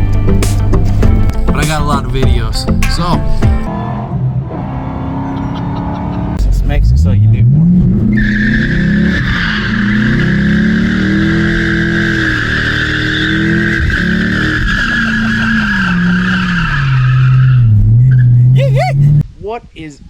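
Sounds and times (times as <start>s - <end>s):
car engine revving: 3.2s - 19.2s
tyre squeal: 8.1s - 19.1s.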